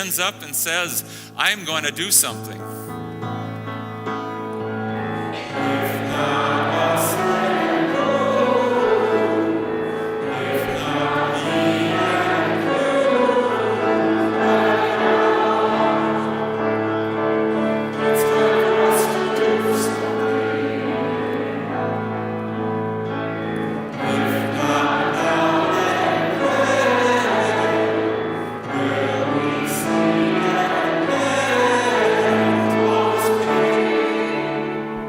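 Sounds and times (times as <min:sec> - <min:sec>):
person singing: 0:00.0 - 0:02.9, 0:05.4 - 0:16.8, 0:24.0 - 0:35.0
held keyboard chords: 0:00.0 - 0:35.0.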